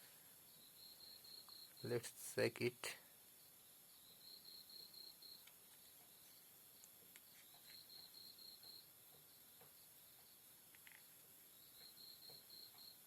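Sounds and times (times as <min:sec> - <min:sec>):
cricket chirping: 0:00.0 - 0:02.0, 0:03.1 - 0:13.0.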